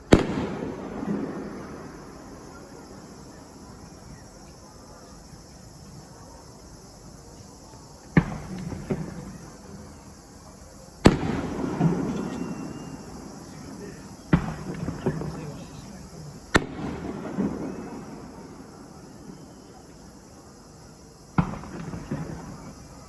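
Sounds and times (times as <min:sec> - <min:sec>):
small firework pop: 0:00.0 - 0:03.2, 0:08.1 - 0:09.6, 0:11.0 - 0:15.7, 0:16.5 - 0:18.6, 0:21.3 - 0:22.9
fireworks booming: 0:00.0 - 0:06.1, 0:08.1 - 0:23.0.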